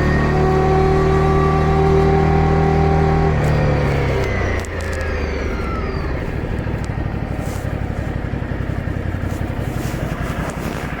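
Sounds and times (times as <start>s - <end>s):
motorcycle engine idling: 3.0s - 11.0s.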